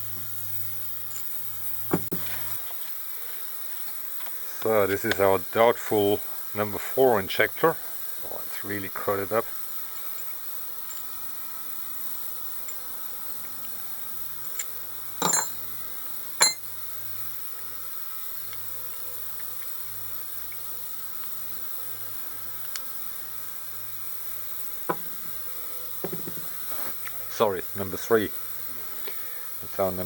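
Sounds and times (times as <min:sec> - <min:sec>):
steady background hiss: 0:01.8 - 0:20.5, 0:21.1 - 0:30.0
metal parts clinking: 0:14.6 - 0:15.6, 0:16.4 - 0:16.6.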